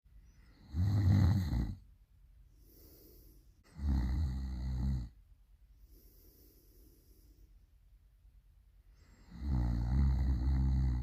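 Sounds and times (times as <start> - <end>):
quiet breath: 0.1 - 11.0
person snoring loudly: 0.6 - 1.8, 3.7 - 5.2, 9.2 - 11.0.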